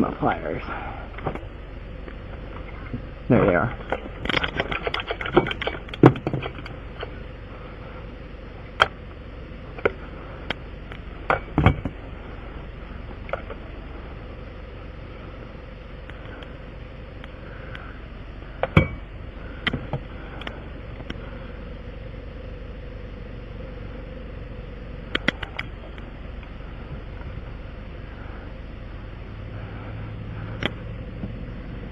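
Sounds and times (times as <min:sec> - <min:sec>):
vehicle engine hum: 0:00.0 - 0:31.9
hand tools clicking and knocking: 0:03.8 - 0:07.1.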